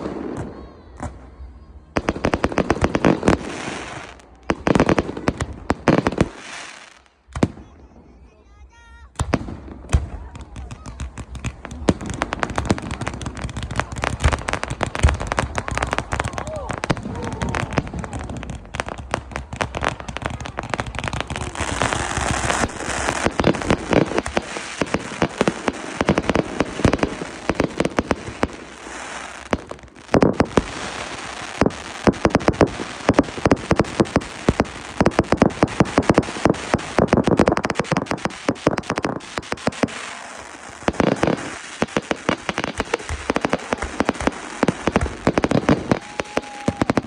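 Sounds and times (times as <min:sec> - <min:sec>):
fireworks bursting and crackling: 0:00.0 - 0:47.0.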